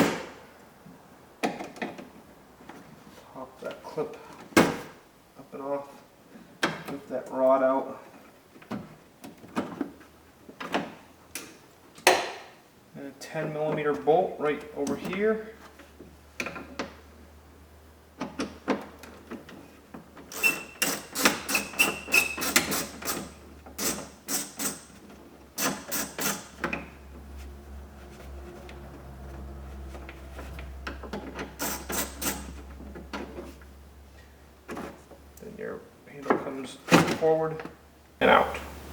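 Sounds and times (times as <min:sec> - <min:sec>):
brief squeak: 0:20.3 - 0:22.6
ratchet clicking: 0:20.3 - 0:25.0, 0:31.4 - 0:32.6
low steady hum: 0:26.5 - 0:36.2.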